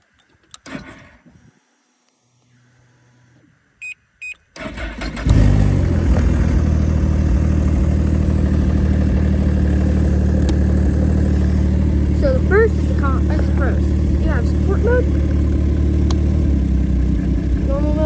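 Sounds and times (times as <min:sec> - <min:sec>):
snowmobile engine starting and idling: 0:00.6 - 0:01.5, 0:04.5 - 0:18.0.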